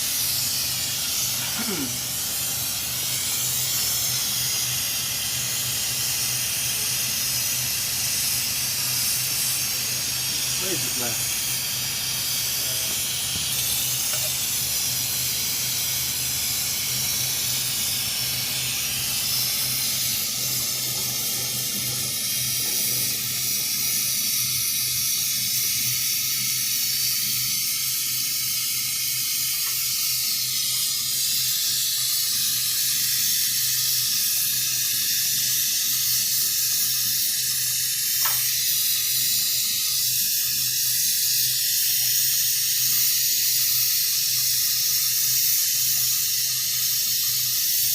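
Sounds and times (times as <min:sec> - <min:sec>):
steady low hum: 0:00.0 - 0:25.6
pressurized gas hissing: 0:00.0 - 0:47.9.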